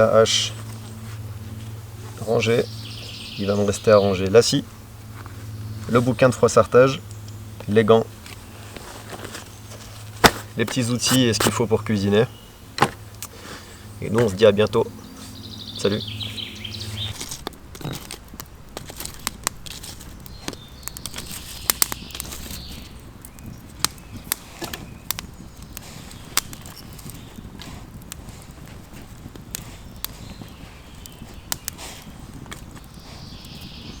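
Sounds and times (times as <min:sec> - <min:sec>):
bird chirps: 0:02.2 - 0:04.6, 0:13.8 - 0:18.1, 0:20.2 - 0:27.5, 0:29.6 - 0:34.0
sharp crackles and clicks: 0:16.1 - 0:34.0.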